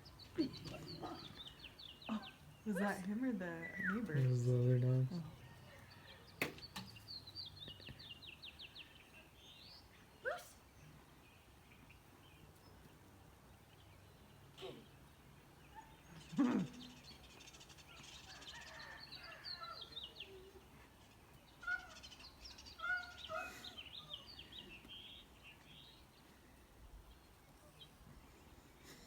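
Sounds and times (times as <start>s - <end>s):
small birds chirping: 0.0s - 29.0s.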